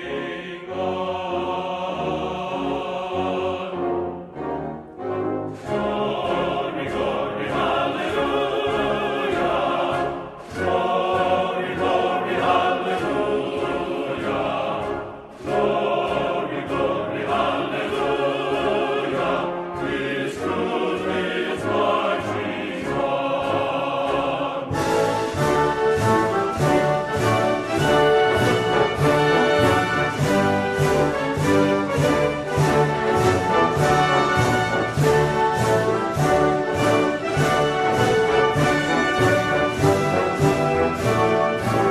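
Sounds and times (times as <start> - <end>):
choir singing: 0.0 - 41.9
orchestral music: 0.0 - 41.9.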